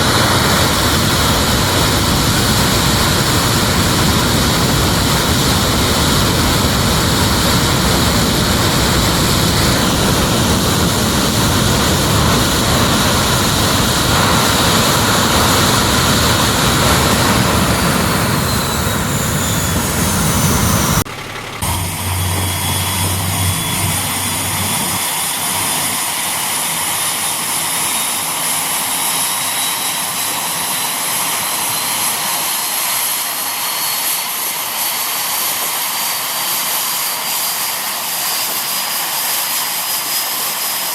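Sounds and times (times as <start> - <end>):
engine running: 0.0 - 28.6
high whine rising in pitch: 5.4 - 27.1.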